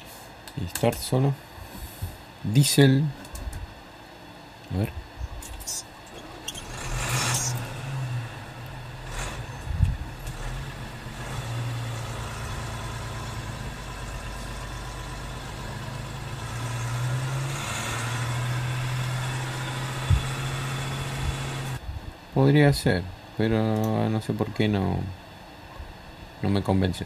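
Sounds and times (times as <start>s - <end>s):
diesel engine idling: 6.0s - 21.8s.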